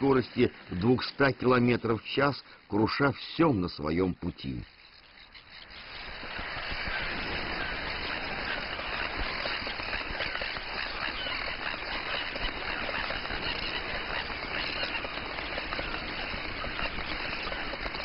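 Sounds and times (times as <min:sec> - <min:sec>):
tern colony harsh calls: 0:06.2 - 0:18.0.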